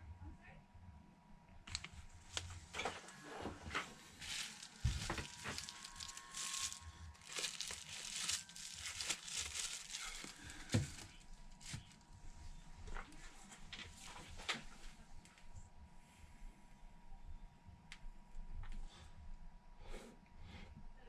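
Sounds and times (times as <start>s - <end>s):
crinkling rustles: 1.7s - 12.1s.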